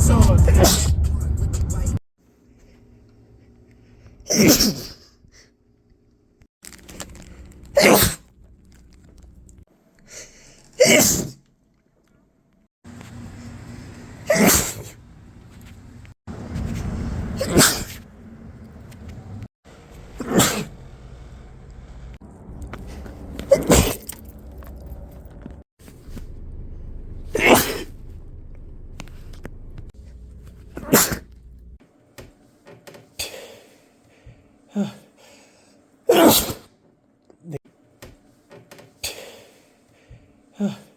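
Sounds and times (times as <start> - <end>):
person sneezing: 0.5 - 0.9, 4.3 - 5.1, 7.7 - 8.2, 10.1 - 11.4, 14.3 - 14.9, 17.4 - 18.0, 20.2 - 20.7, 23.4 - 24.0, 27.3 - 27.9, 30.6 - 31.4, 36.1 - 36.7
steady background hum: 12.9 - 34.7.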